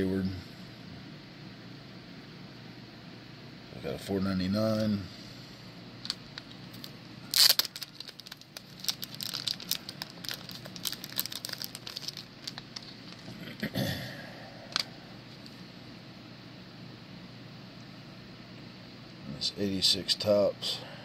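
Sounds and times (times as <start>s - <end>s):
plastic packaging crinkling: 6.0s - 13.4s.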